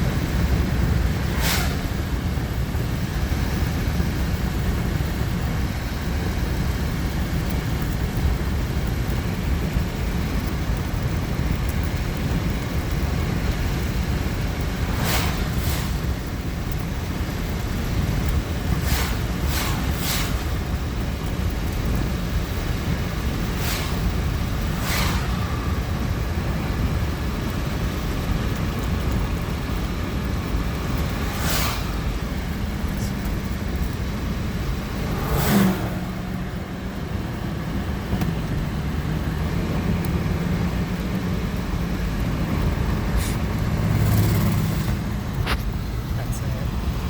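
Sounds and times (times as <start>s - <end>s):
car engine rumble: 0.0s - 47.0s
steady low hum: 0.0s - 47.0s
brief swishes: 1.3s - 1.9s, 14.9s - 16.0s, 18.8s - 20.4s, 23.6s - 24.1s, 24.7s - 25.8s, 31.2s - 32.0s.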